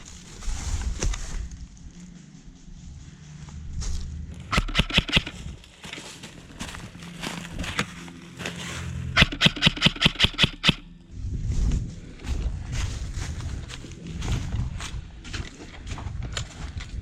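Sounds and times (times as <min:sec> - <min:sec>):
airsoft gun firing: 0:04.5 - 0:05.4, 0:09.2 - 0:10.9.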